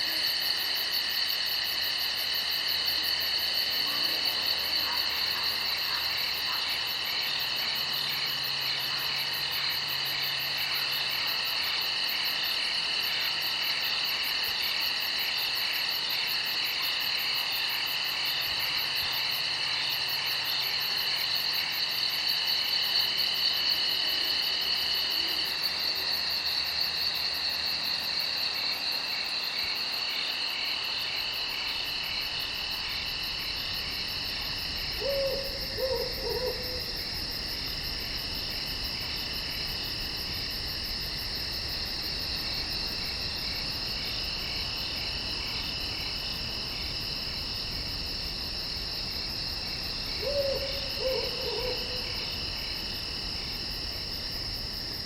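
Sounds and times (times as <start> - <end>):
crickets trilling: 0.0 - 55.0.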